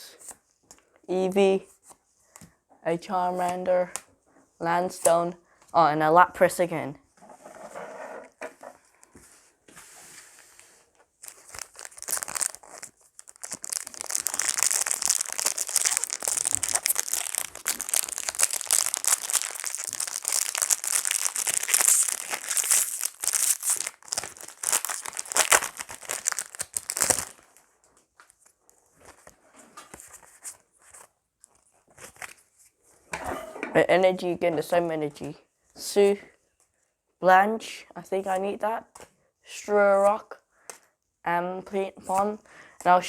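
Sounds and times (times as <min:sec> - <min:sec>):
foil wrapper crinkling and tearing: 0:11.0 - 0:27.6.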